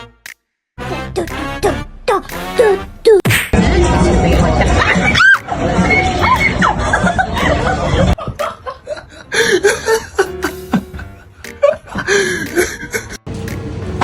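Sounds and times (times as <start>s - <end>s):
background music: 0.0s - 14.0s
laughter: 4.6s - 13.2s.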